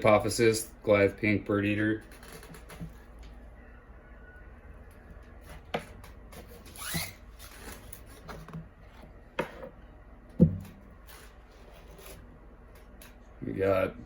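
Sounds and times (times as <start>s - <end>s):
deep thump of object set down: 10.4s - 10.8s.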